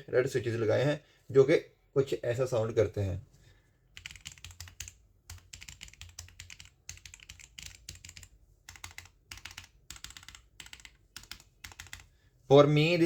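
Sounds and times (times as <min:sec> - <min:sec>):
mechanical keyboard typing: 0:04.0 - 0:12.1.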